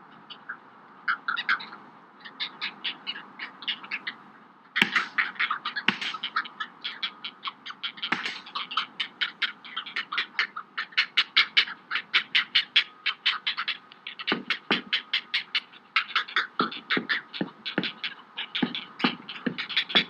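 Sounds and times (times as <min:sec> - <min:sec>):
heron chicks clacking calls: 0:04.8 - 0:20.0.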